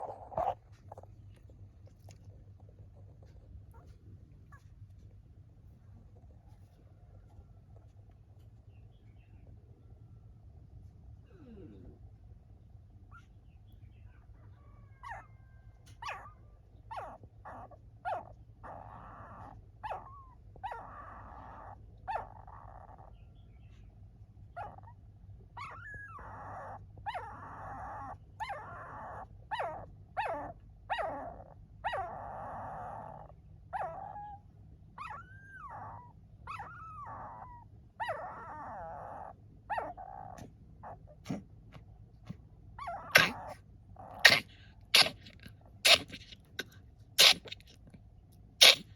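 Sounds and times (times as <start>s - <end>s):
dogs whimpering and whining: 0.0s - 1.1s, 14.8s - 23.2s, 24.6s - 34.4s, 35.0s - 41.4s, 42.2s - 46.4s
low steady hum: 0.0s - 48.9s.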